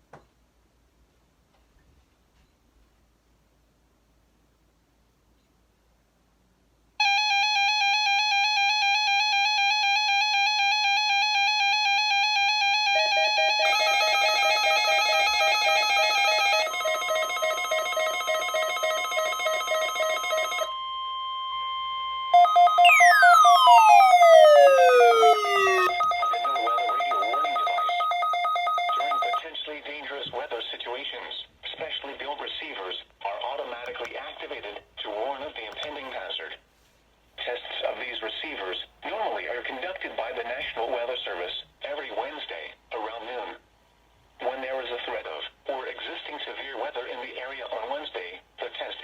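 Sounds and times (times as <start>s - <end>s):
falling whistle: 22.8s - 29.4s
pulsing electronic tone: 22.8s - 29.4s
warbling electronic tone: 22.8s - 29.4s.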